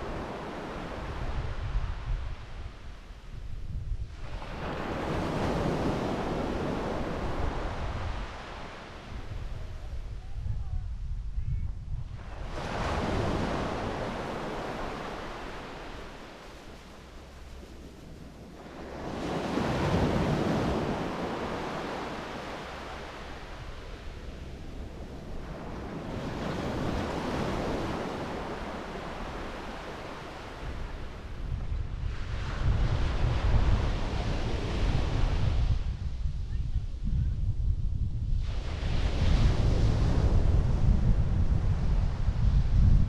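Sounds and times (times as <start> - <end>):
waves breaking on beach: 0.0 - 2.5, 4.2 - 9.4, 12.3 - 31.4
wind rumble on microphone: 0.0 - 43.0.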